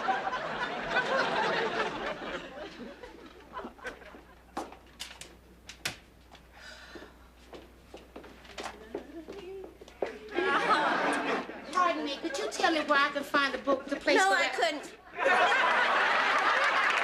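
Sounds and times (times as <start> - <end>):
audience laughing: 0.0 - 4.6, 10.3 - 12.7, 14.7 - 17.0.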